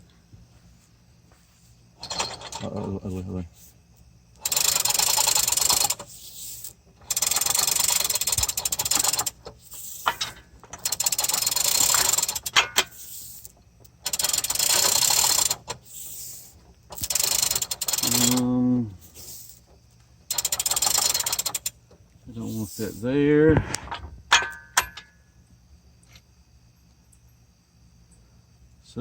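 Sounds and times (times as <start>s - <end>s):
ratchet wrench clicking: 4.4s - 19.6s, 20.3s - 21.8s.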